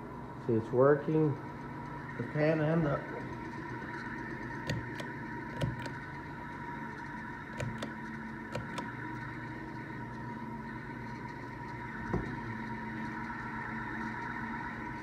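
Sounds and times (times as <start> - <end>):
fan motor humming: 0.0 - 15.0.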